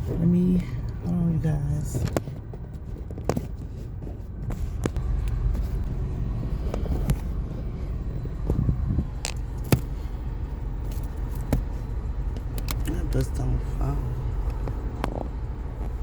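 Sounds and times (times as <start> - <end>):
car rumble from inside cabin: 0.0 - 16.0.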